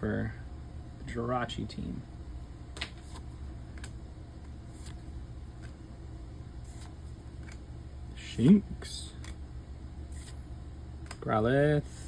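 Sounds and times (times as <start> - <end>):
steady low hum: 0.0 - 12.0
trading cards clicking and rustling: 6.7 - 7.6.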